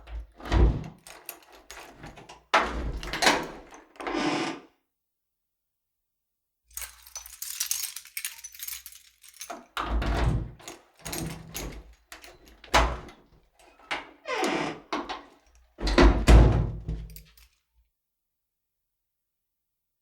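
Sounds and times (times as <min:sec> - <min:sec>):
key unlocking door lock: 0:00.1 - 0:04.0, 0:06.8 - 0:15.6
keys jangling: 0:00.9 - 0:03.8, 0:06.7 - 0:13.8, 0:16.9 - 0:17.6.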